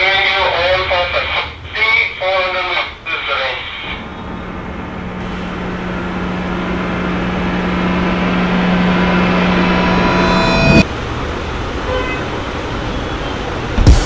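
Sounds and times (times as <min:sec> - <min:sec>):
short static burst: 0:03.8 - 0:10.8
low hum: 0:03.8 - 0:10.9.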